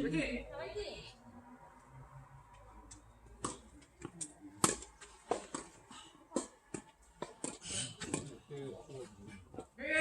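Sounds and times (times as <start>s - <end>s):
tennis ball bouncing on court: 3.4s - 8.3s
tennis ball struck by rackets: 3.4s - 8.3s.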